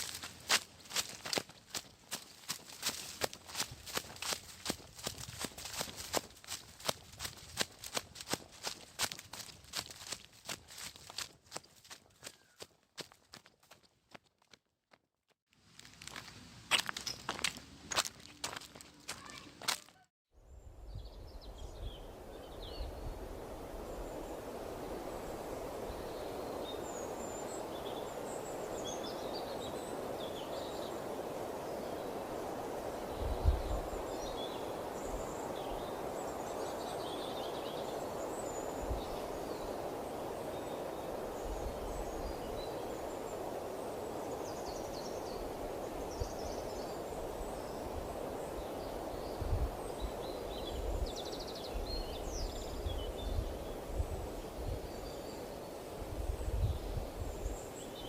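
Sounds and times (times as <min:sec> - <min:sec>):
small birds chirping: 0:00.0 - 0:12.8, 0:16.1 - 0:58.0
wind rushing: 0:20.6 - 0:58.0.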